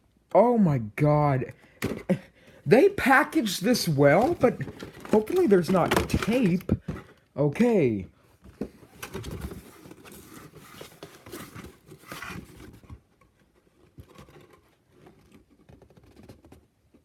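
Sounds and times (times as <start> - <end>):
packaging rustling: 2.8 - 7.2, 8.6 - 16.6.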